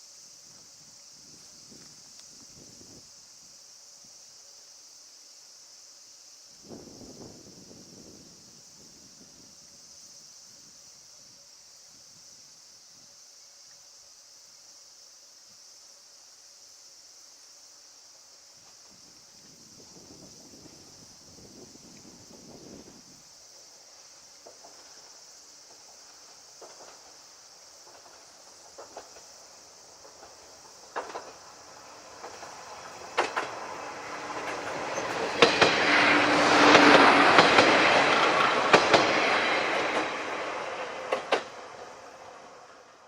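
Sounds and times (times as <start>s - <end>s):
insects chorus: 0.0s - 43.0s
wind buffeting microphone: 18.9s - 23.2s
diesel railcars passing: 20.0s - 43.0s
wheels clacking over rail joints: 25.7s - 27.2s, 27.8s - 43.0s.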